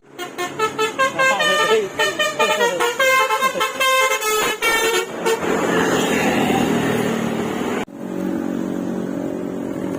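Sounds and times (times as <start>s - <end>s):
bus horn melody: 0.0s - 5.8s
bus passing close by: 0.0s - 9.9s
steady engine hum: 0.0s - 9.9s.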